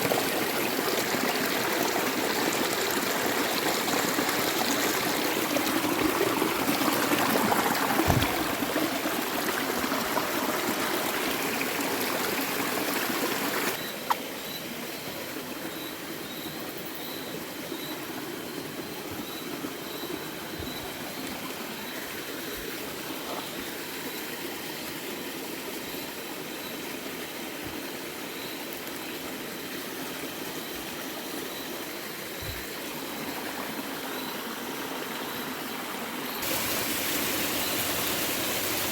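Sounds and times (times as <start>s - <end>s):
creek water running: 0.0s - 38.9s
faint high chirp: 15.7s - 22.7s.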